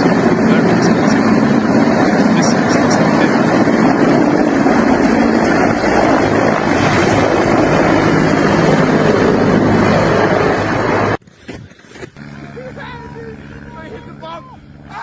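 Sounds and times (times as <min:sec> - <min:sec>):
dense rushing noise: 0:00.0 - 0:11.2
propeller aircraft engine: 0:00.0 - 0:11.2, 0:12.1 - 0:15.0.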